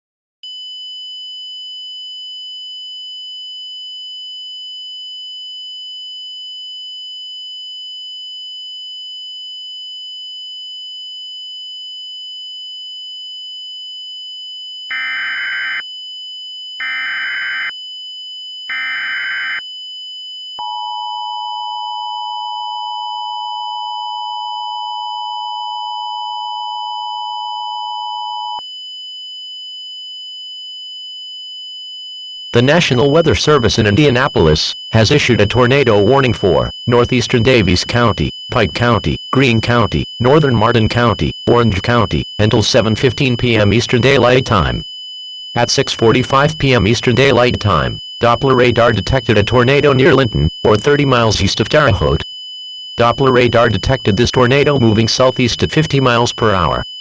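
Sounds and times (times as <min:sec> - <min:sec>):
alert header data bursts: 0:14.9 - 0:15.8, 0:16.8 - 0:17.7, 0:18.7 - 0:19.6, 0:32.6 - 0:44.9, 0:45.5 - 0:52.3, 0:52.9 - 0:57.0
high electronic tone: 0:14.9 - 0:15.8, 0:16.8 - 0:17.7, 0:18.7 - 0:19.6, 0:45.6 - 0:52.2, 0:53.0 - 0:57.0
two-tone attention signal: 0:20.6 - 0:28.6, 0:45.6 - 0:52.2.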